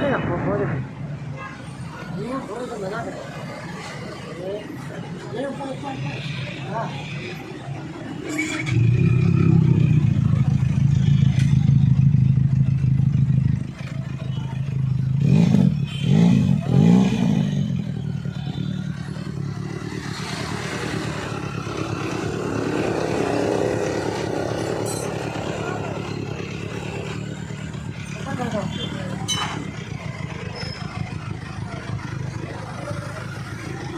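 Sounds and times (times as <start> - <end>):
motorcycle engine revving: 7.8 - 33.9.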